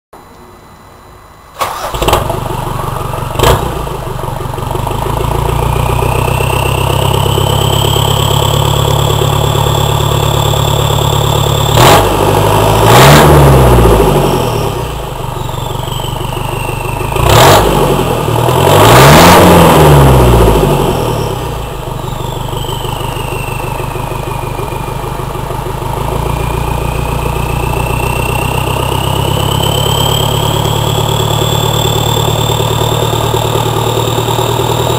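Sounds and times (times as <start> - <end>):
engine starting and revving: 1.6 - 25.0, 25.9 - 34.9.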